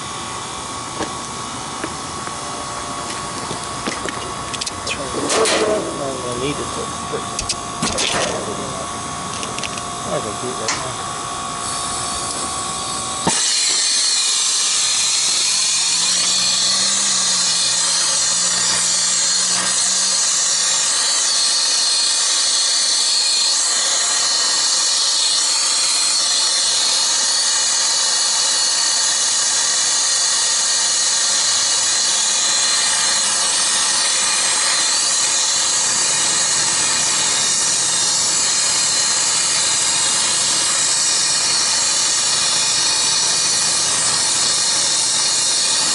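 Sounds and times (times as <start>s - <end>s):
torch burning with steady hiss: 0.0s - 45.9s.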